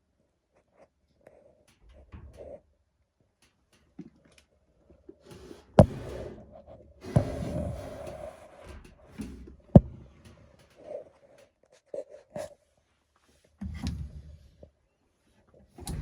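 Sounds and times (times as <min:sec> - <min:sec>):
tools scraping: 0:05.2 - 0:11.4.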